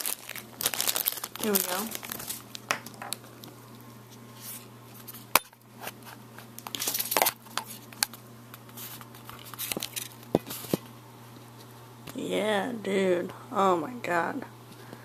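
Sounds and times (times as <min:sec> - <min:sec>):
plastic wrap crinkling: 0:00.0 - 0:03.8.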